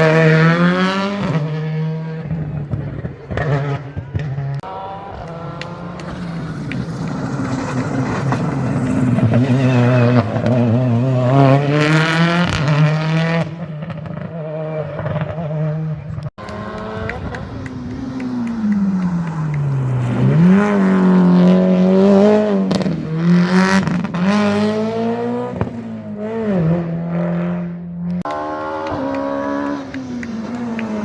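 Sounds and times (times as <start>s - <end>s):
rally car engine at full load: 0.0s - 31.0s.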